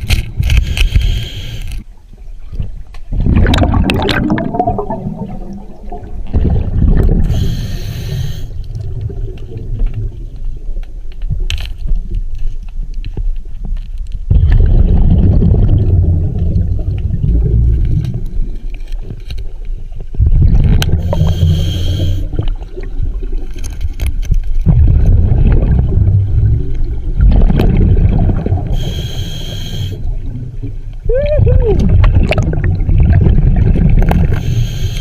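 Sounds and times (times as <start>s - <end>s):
regulator inhalation hiss: 0.8s - 1.8s, 7.3s - 8.6s, 21.0s - 22.3s, 28.8s - 30.1s, 34.4s - 35.0s
exhaled bubbles rumbling: 2.1s - 12.3s, 14.2s - 29.0s, 30.0s - 34.6s.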